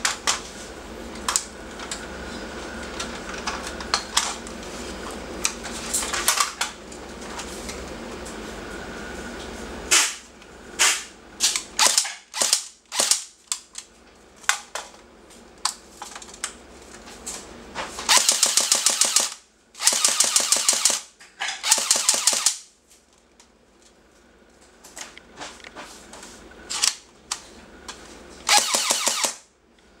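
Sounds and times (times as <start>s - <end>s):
airsoft rifle full-auto bursts: 11.8s - 13.2s, 18.1s - 21.1s, 21.7s - 22.6s, 28.5s - 29.4s.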